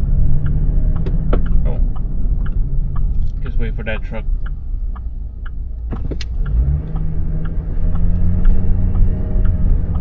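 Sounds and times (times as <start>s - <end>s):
light repeating tick: 0.0s - 10.0s
car engine pulling away: 5.8s - 10.0s.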